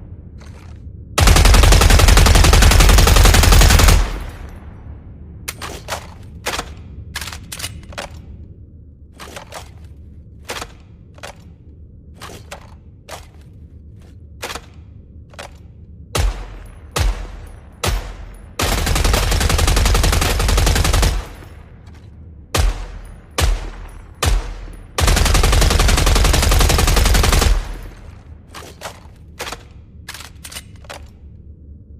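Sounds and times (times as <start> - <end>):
machine gun fire: 1.2 - 4.3, 16.2 - 21.4, 22.6 - 28.1.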